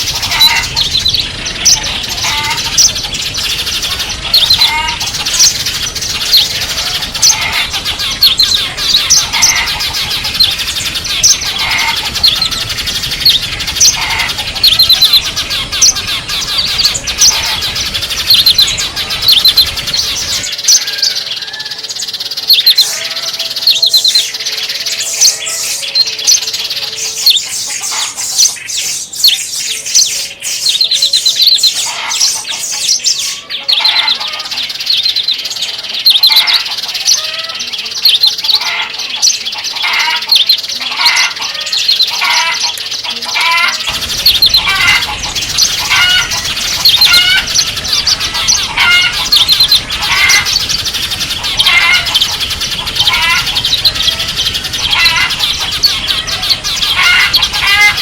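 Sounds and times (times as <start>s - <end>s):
songbirds chirping and twittering: 0.0s - 58.0s
background rumble: 43.9s - 58.0s.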